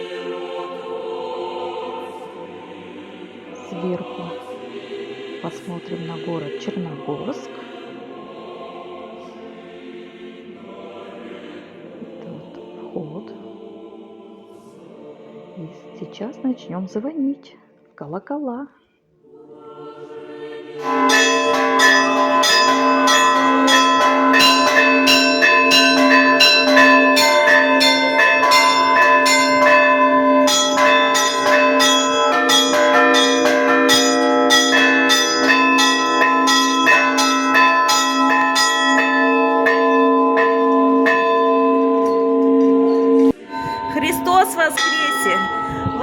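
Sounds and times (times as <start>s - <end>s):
small bells struck rapidly: 20.9s - 41.5s, 43.4s - 46.0s
low bell striking: 20.9s - 46.0s.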